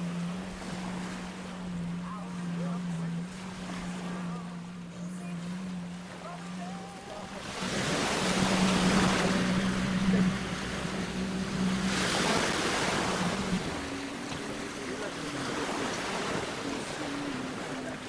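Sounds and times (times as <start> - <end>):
boat engine running: 0.0 - 18.0
water rushing: 0.0 - 18.0
wind on microphone: 7.3 - 17.6.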